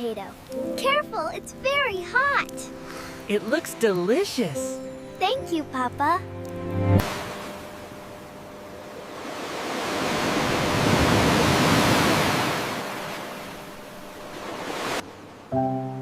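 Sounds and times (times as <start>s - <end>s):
ocean wave surging: 7.0s - 15.4s.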